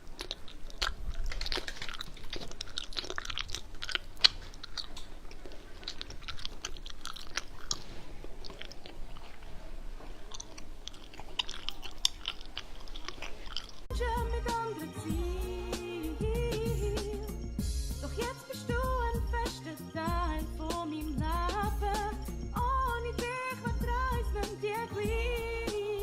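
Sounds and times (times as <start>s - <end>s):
person chewing and crunching: 0.0s - 13.9s.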